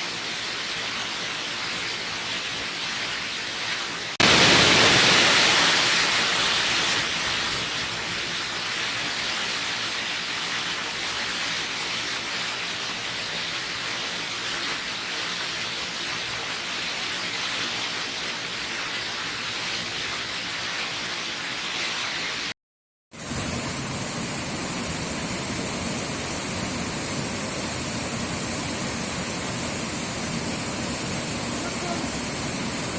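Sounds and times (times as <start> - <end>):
waterfall rushing: 4.2 - 10.9, 23.2 - 32.9.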